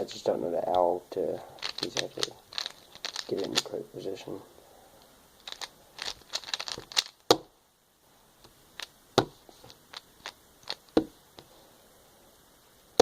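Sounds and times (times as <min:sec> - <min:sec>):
plastic puzzle cube clicking: 0:01.6 - 0:03.7, 0:05.4 - 0:07.4, 0:09.7 - 0:11.1.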